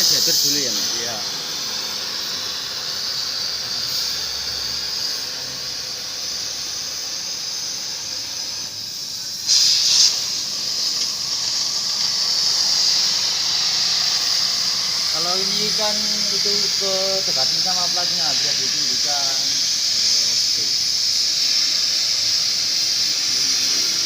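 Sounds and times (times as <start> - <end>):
cutting torch flame hissing: 0.0 - 24.0.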